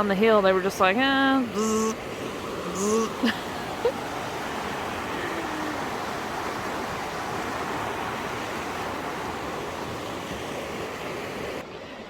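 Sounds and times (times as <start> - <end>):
waterfall roaring: 1.4 - 10.3.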